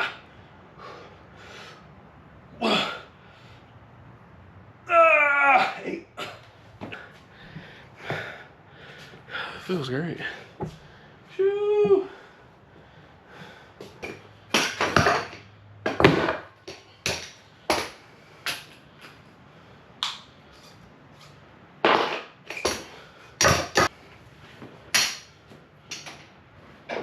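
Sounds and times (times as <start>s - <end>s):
heavy breathing: 6.2s - 14.5s.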